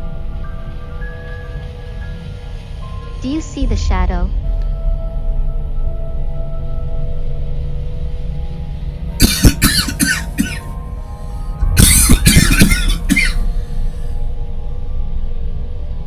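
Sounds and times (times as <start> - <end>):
man coughing: 9.2 - 10.7, 11.6 - 13.6.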